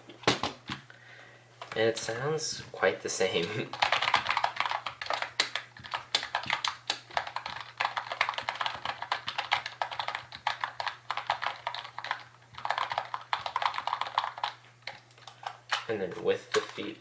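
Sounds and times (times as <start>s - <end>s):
keyboard keys clicking: 3.7s - 15.9s.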